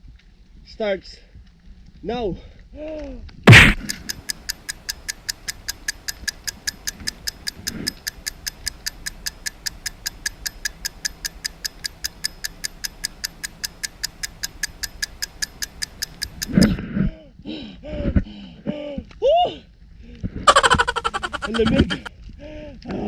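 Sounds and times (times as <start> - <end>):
clock ticking: 3.5 - 16.7, 20.5 - 22.1.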